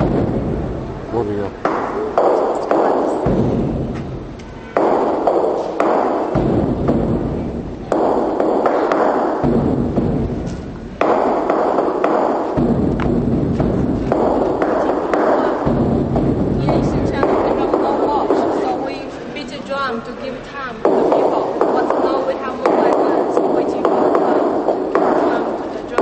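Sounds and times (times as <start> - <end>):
large drums rolling: 0.0 - 19.6.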